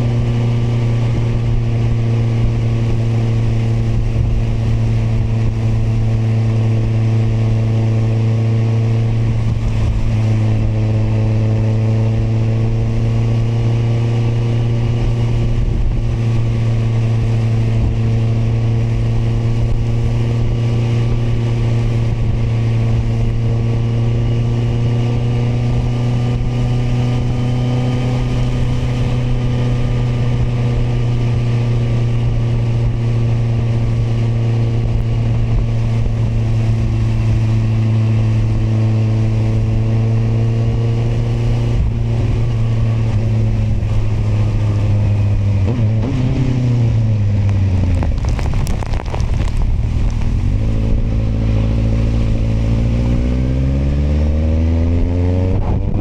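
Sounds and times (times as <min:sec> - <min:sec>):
motorcycle engine cruising: 0:41.0 - 0:56.0.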